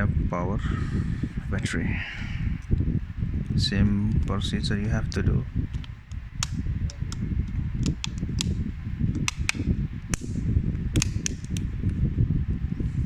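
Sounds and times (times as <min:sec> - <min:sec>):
low handling rumble: 0:00.0 - 0:13.0.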